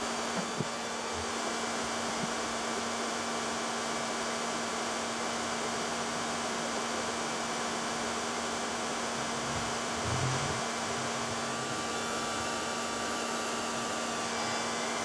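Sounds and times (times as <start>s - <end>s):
hair dryer running: 9.2s - 15.0s.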